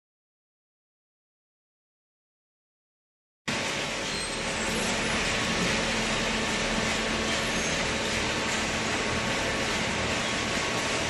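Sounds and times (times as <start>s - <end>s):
shredding and baling machinery: 3.5s - 11.0s.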